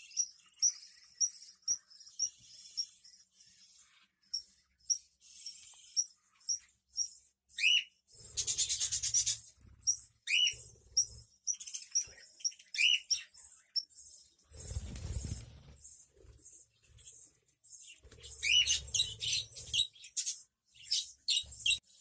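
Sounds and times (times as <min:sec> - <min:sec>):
budgerigars chirping: 0:04.3 - 0:21.8
harsh pulsing bird chatter: 0:07.6 - 0:22.0.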